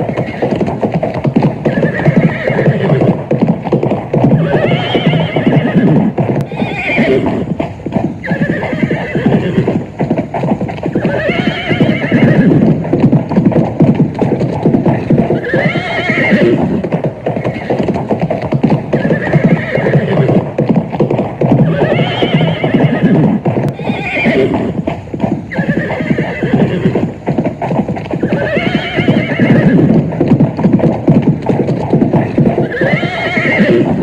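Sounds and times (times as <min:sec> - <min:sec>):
horse neighing: 0:00.0 - 0:00.7, 0:01.6 - 0:03.2, 0:04.2 - 0:07.6, 0:08.2 - 0:09.9, 0:10.8 - 0:12.9, 0:15.0 - 0:18.0, 0:18.9 - 0:20.5, 0:21.6 - 0:24.8, 0:25.5 - 0:27.1, 0:28.2 - 0:30.1, 0:32.2 - 0:34.0
horse hooves galloping: 0:00.0 - 0:34.0.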